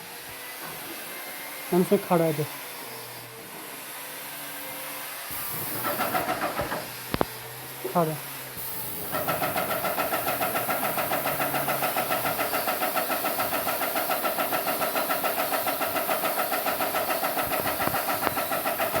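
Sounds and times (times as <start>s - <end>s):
paint sprayer pump pulsing: 5.3s - 8.2s, 8.8s - 19.0s.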